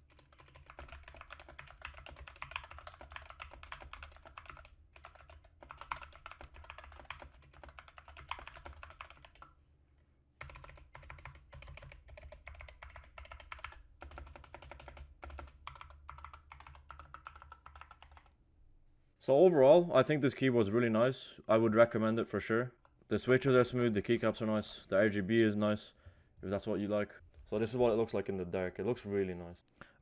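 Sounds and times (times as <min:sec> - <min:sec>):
mechanical keyboard typing: 0:00.0 - 0:09.5, 0:10.4 - 0:18.3.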